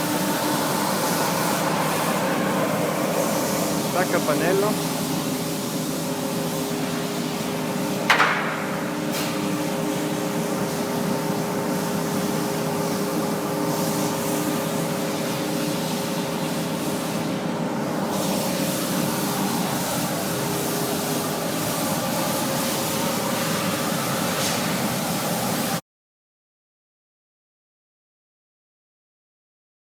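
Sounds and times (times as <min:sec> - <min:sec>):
machinery hum and hiss: 0:00.0 - 0:25.8
sharp knock: 0:08.1 - 0:08.9.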